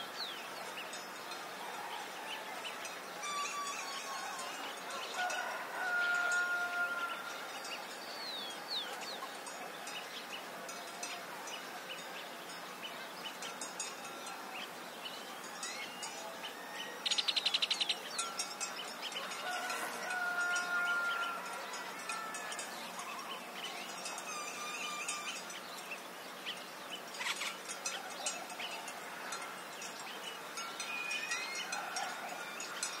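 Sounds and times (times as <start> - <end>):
distant rooster crowing: 1.6 - 7.5, 19.0 - 23.6, 30.8 - 33.0
small birds chirping: 7.1 - 19.5, 20.4 - 33.0.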